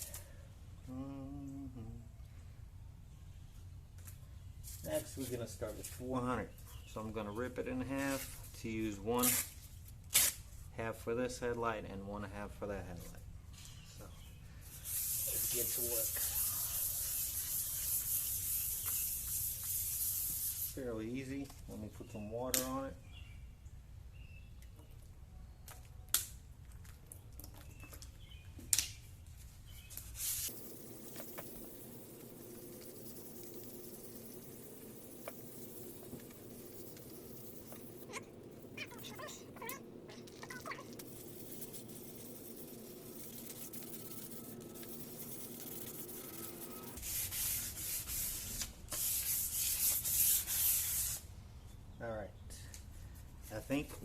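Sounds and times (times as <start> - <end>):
spray bottle spritzing water: 14.7 - 20.8, 30.0 - 51.2
wet sandpaper scrubbing plastic: 14.9 - 20.8, 30.0 - 51.2.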